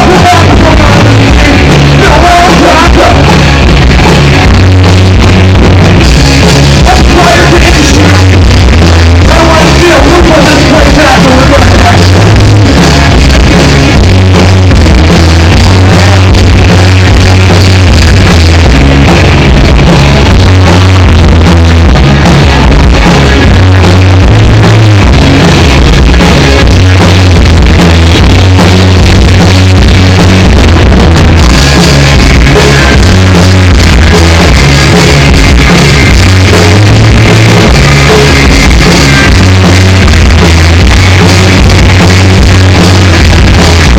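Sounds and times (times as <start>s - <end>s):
loud distorted rock music: 0.0s - 43.9s.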